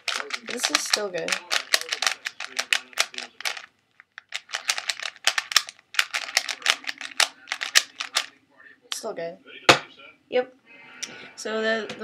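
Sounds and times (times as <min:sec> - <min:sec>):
plastic puzzle cube clacking: 0:00.0 - 0:08.3.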